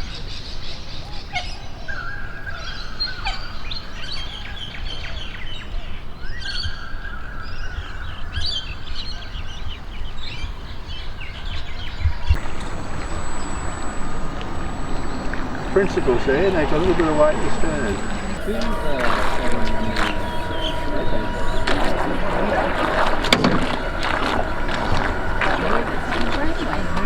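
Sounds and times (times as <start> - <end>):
steady high whine: 12.2 - 27.0.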